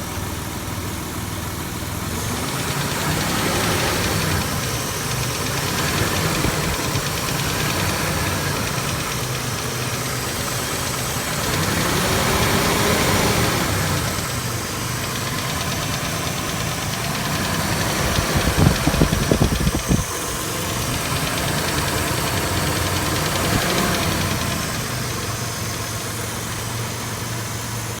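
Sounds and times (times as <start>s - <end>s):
car engine running: 0.0s - 28.0s.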